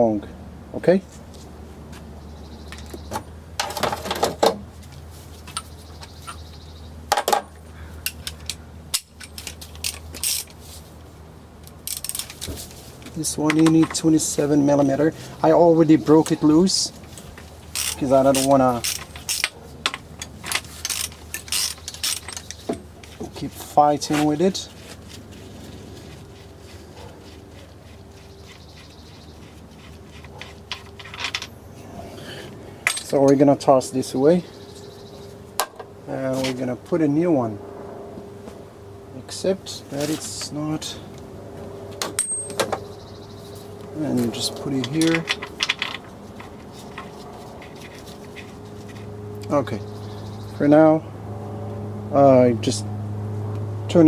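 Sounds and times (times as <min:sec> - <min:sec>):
steady low hum: 0:00.0 - 0:54.0
metal bolts and tools clinking: 0:03.6 - 0:04.6, 0:07.1 - 0:10.6, 0:11.6 - 0:14.9, 0:16.0 - 0:23.3, 0:30.2 - 0:31.6, 0:32.8 - 0:33.5, 0:42.0 - 0:42.9, 0:44.1 - 0:49.6.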